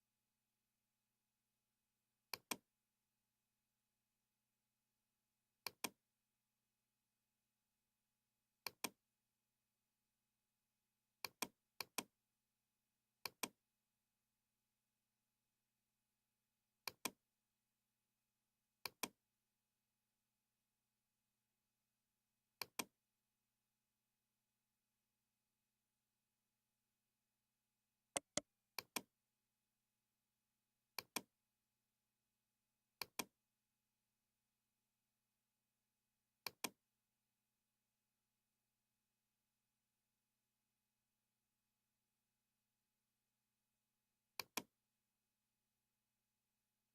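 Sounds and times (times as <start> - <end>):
computer mouse clicks: 2.3 - 2.7, 5.6 - 6.0, 8.6 - 9.0, 11.2 - 12.1, 13.2 - 13.6, 16.8 - 17.2, 18.8 - 19.2, 22.6 - 23.0, 28.2 - 29.1, 31.0 - 31.3, 33.0 - 33.3, 36.4 - 36.8, 44.4 - 44.7.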